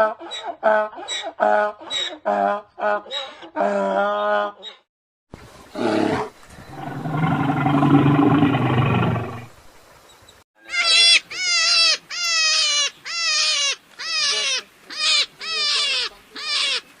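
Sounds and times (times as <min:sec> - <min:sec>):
deep animal roar: 0:05.7 - 0:09.6.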